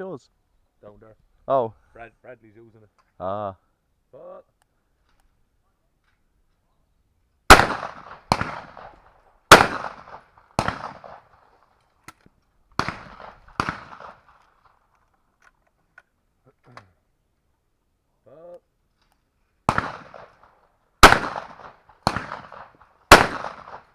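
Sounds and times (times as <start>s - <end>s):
shotgun shots: 7.5s - 11.5s, 12.8s - 14.4s, 19.7s - 23.9s.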